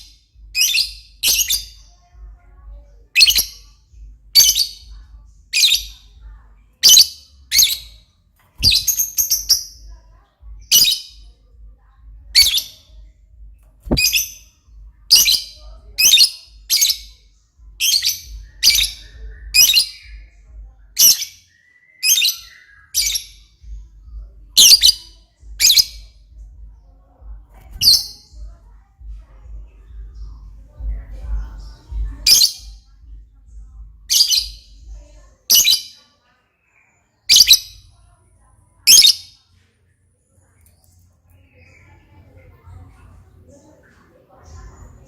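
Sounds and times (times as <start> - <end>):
lovebird shrill chirps: 12.4 - 12.9, 21.0 - 23.5, 24.6 - 26.0, 35.5 - 36.0, 37.3 - 37.8, 38.9 - 39.4.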